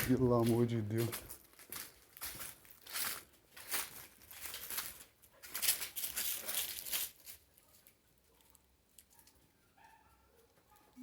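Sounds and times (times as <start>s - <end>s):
rustling crackling noise: 0.0s - 9.6s.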